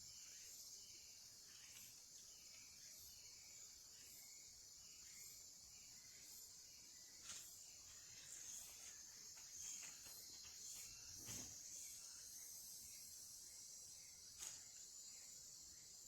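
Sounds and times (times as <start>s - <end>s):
insects chirping: 0.0s - 16.0s.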